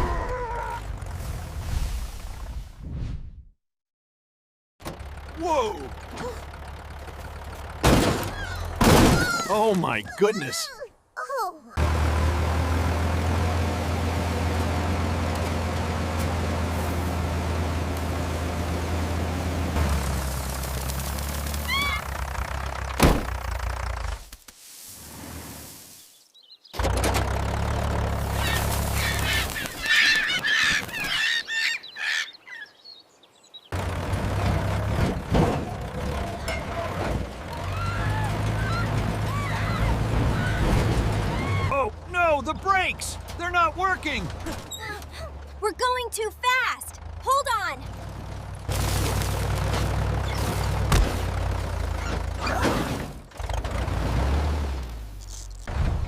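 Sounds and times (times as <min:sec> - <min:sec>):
tractor engine running: 0:00.8 - 0:01.6, 0:04.8 - 0:10.6, 0:11.8 - 0:24.4, 0:26.8 - 0:31.0, 0:33.7 - 0:56.0
goose-like fowl honking: 0:28.3 - 0:32.7.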